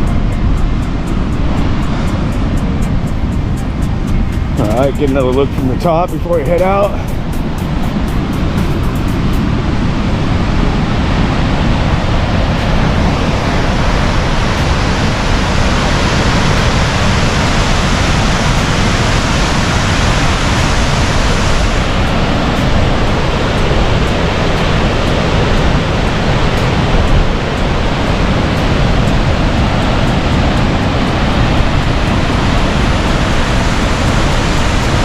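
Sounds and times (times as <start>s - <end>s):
waterfall rushing: 0.0s - 35.0s.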